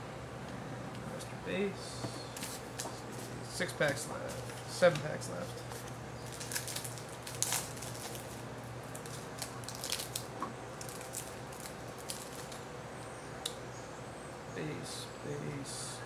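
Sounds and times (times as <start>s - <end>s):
low steady hum: 0.0s - 16.0s
foil pack crinkling and tearing: 5.4s - 12.6s.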